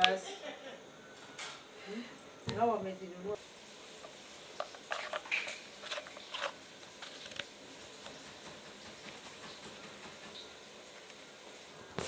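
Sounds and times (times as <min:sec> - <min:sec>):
faint room hiss: 0:00.0 - 0:12.0.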